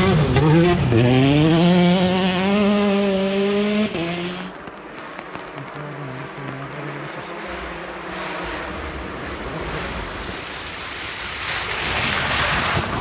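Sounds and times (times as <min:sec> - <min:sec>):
low engine rumble: 0:03.7 - 0:11.5
tyres hissing on gravel: 0:04.4 - 0:13.0.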